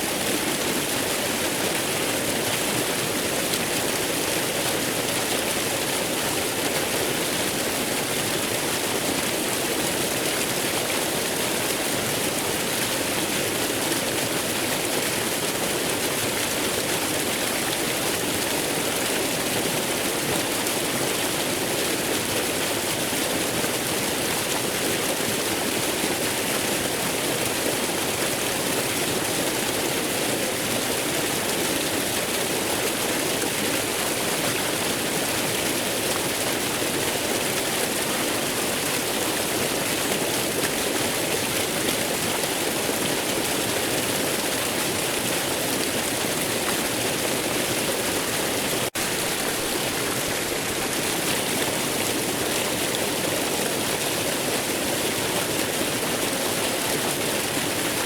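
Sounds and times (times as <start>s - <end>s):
waterfall rushing: 44.6s - 54.7s.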